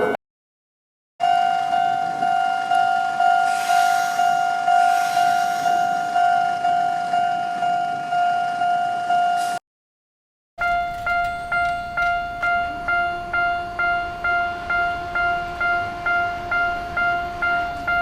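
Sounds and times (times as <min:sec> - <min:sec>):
hiss of noise: 0:03.5 - 0:06.2
level crossing bell ringing: 0:10.6 - 0:18.0.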